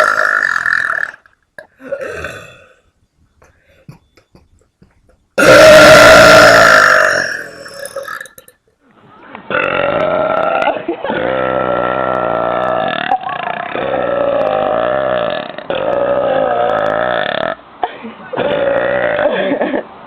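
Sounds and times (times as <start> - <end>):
woman burping loudly: 0.0 - 2.8, 5.4 - 8.6, 9.5 - 17.6, 18.4 - 19.6
deep loud burps: 0.0 - 2.9, 5.4 - 8.6, 9.5 - 17.6, 18.4 - 19.6.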